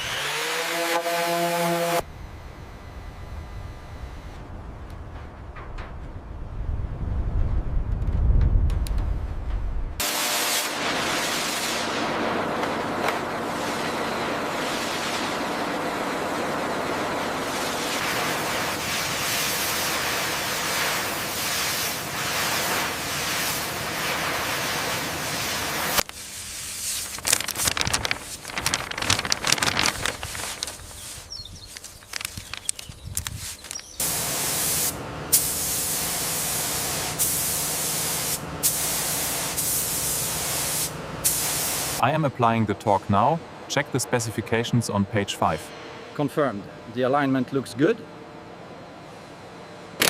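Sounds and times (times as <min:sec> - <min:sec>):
high-pressure cleaning jet hiss: 0:10.0 - 0:12.0, 0:17.5 - 0:27.1, 0:34.0 - 0:42.0
sharp crackles and clicks: 0:25.9 - 0:34.1.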